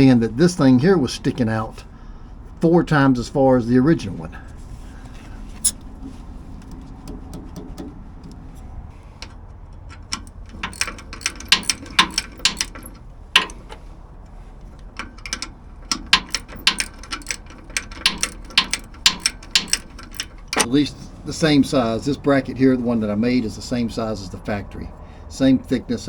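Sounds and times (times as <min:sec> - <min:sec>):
metal parts clicking and clinking: 0:09.2 - 0:14.0, 0:14.6 - 0:20.7.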